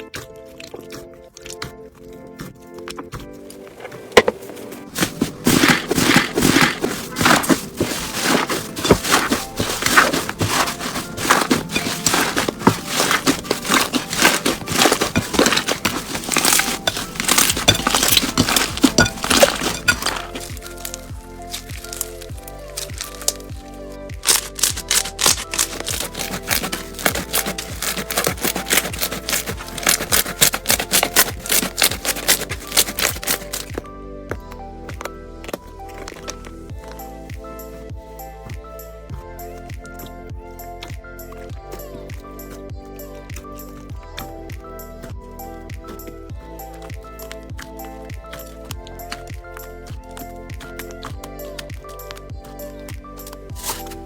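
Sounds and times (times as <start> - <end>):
background music with beat: 2.8 - 54.0
hands squishing slime: 5.0 - 33.8, 45.8 - 54.0.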